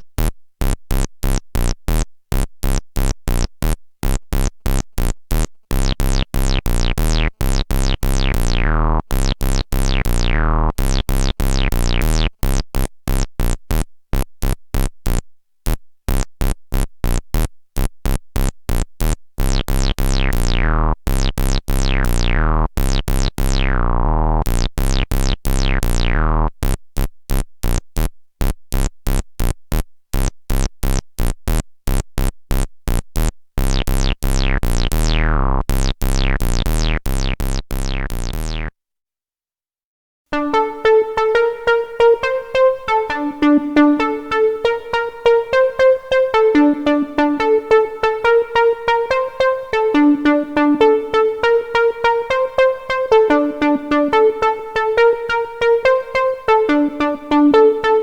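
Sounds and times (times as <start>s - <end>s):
synthesizer sequence over deep bass: 8.2s - 9.0s, 40.4s - 58.0s
resonant filter sweep: 40.4s - 58.0s.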